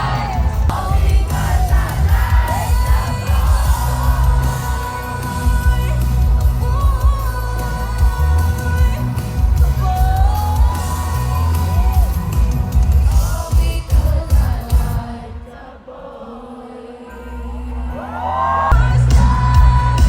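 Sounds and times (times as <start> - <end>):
crowd cheering: 0.0 - 6.2, 9.6 - 13.5, 17.5 - 19.9
live pop music with singer: 0.0 - 15.7, 17.0 - 20.0.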